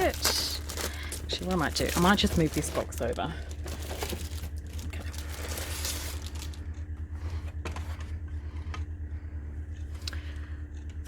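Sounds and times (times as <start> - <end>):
packaging rustling scrape: 0.0 - 6.6
steady low hum: 0.0 - 11.0.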